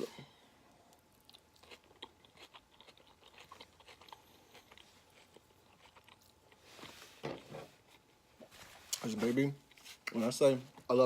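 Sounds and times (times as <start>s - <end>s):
faint chewing with mouth clicks: 0.7s - 7.1s.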